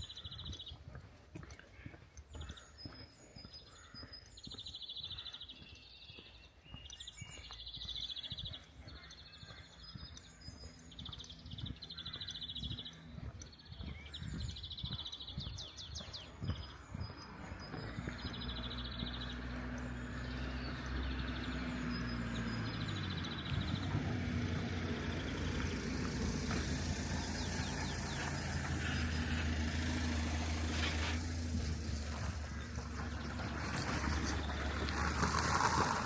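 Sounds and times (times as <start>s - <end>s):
songbirds singing: 0.0s - 36.0s
low engine hum: 7.2s - 36.0s.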